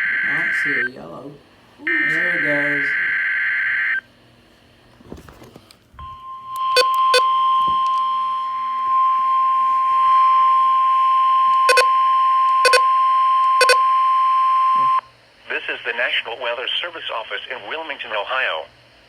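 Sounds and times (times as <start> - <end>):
steady warning alarm tone: 0.0 - 1.0, 1.8 - 4.0, 6.2 - 15.0
short beeps: 6.1 - 7.3, 11.7 - 11.9, 12.6 - 12.9, 13.6 - 13.9.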